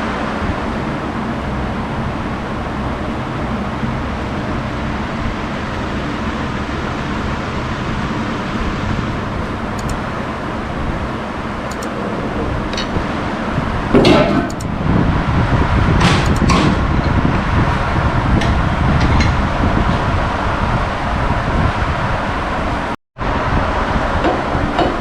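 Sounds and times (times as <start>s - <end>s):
traffic rumble: 0.0s - 25.0s
light clicks: 7.8s - 10.2s, 11.7s - 12.0s, 14.4s - 14.7s, 16.2s - 16.6s.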